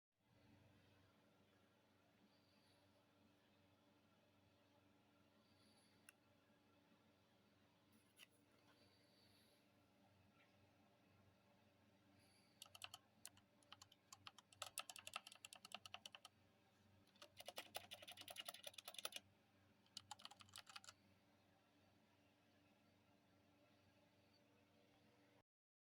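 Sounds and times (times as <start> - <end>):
mechanical keyboard typing: 12.6 - 16.3, 17.1 - 19.2, 19.9 - 20.9.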